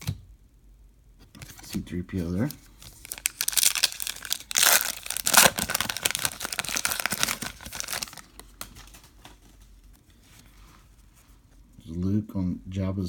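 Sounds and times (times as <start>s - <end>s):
wrapper crinkling and tearing: 2.4s - 9.6s.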